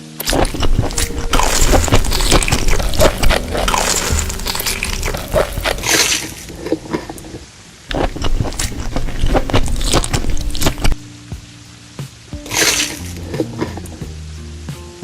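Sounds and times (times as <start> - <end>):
eating crackling and crunching: 0.0 - 11.0, 12.4 - 14.0
background music: 0.0 - 15.0.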